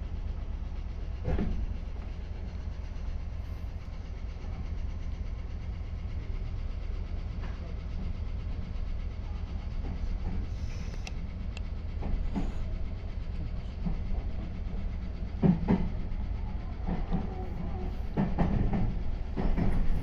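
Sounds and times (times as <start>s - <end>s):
train low rumble: 0.0s - 20.0s
wheels clacking over rail joints: 13.7s - 20.0s.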